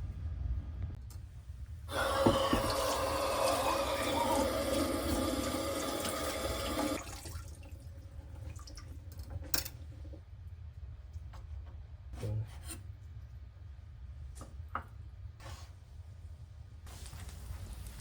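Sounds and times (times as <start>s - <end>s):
low steady hum: 0.0s - 18.0s
running water: 1.9s - 9.4s.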